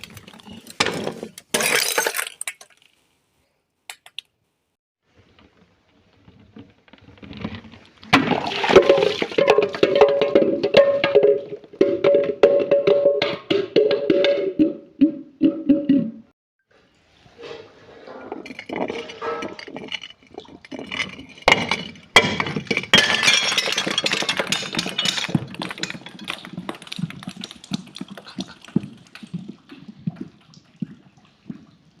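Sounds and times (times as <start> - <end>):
glass shards clinking: 18.4 - 26.6
glass impacts: 18.4 - 28.0.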